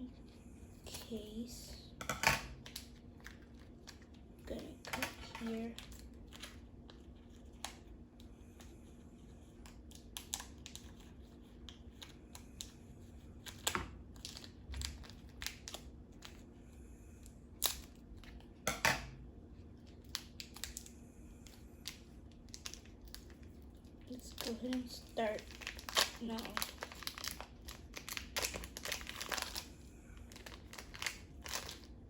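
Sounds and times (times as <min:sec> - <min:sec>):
plastic crinkling: 0:21.5 - 0:31.9.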